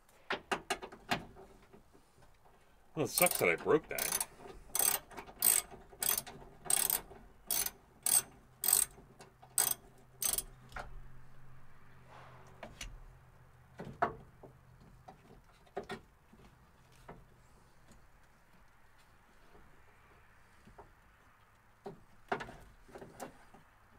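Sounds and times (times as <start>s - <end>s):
ratchet wrench clicking: 3.2s - 3.4s, 4.0s - 9.0s, 9.6s - 10.5s.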